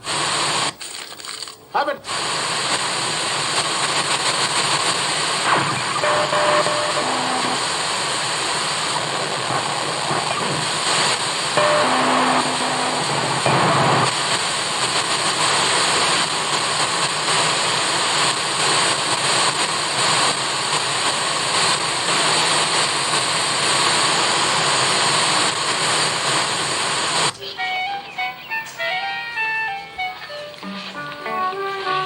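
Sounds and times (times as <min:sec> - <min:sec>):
television static hiss: 0:00.0 - 0:32.0
music from television: 0:05.4 - 0:07.9, 0:08.9 - 0:14.0, 0:27.4 - 0:32.0.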